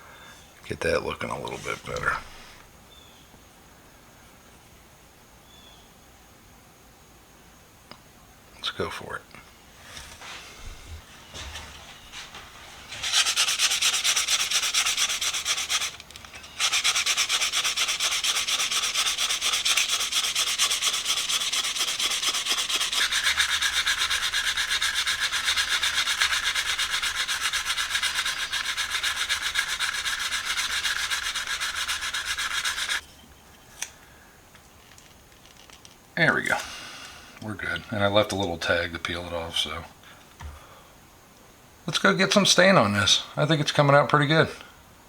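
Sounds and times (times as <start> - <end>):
sandpaper scraping on wood: 12.4 - 33.0.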